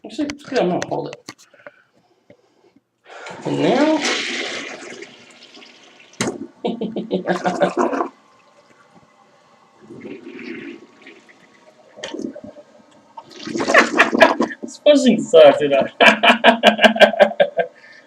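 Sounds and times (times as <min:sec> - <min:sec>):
toilet flushing: 0:03.1 - 0:14.8.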